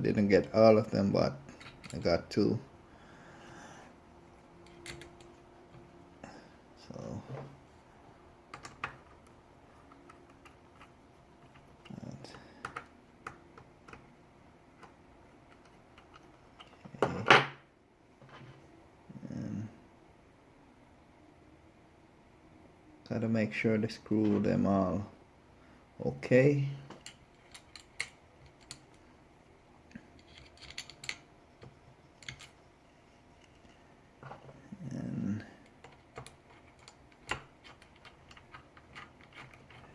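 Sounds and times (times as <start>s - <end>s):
clicks of screws and small parts: 14.8s - 16.9s, 26.9s - 29.0s, 29.9s - 32.6s, 35.6s - 39.9s.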